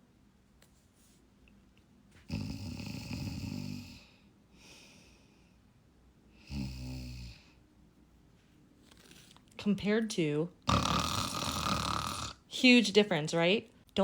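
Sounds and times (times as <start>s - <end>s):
person snoring through nose: 2.3s - 4.0s, 6.4s - 7.4s, 10.7s - 12.4s
faint breath: 4.0s - 6.6s.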